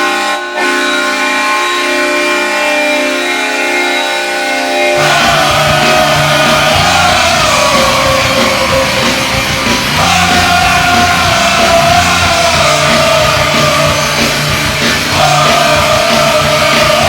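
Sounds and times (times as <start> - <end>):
hard rock band playing: 4.7 - 17.0
shouted vocals: 5.0 - 17.0.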